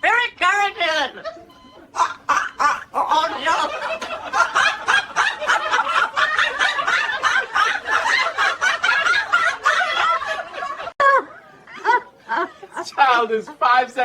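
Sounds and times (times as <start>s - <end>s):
person laughing hard: 1.3s - 12.1s.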